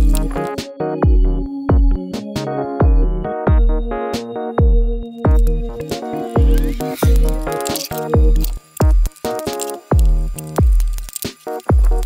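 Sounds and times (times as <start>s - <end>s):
deep bass kick drum: 0.0s - 2.1s, 2.8s - 4.0s, 4.6s - 5.8s, 6.4s - 7.5s, 8.1s - 9.1s, 9.9s - 10.9s, 11.7s - 12.0s
sustained chords: 3.0s - 9.1s.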